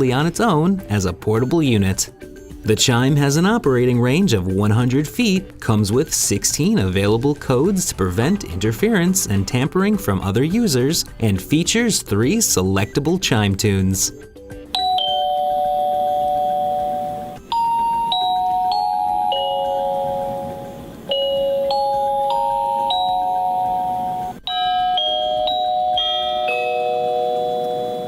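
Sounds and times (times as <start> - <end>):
door chime melodies: 14.8 - 28.0.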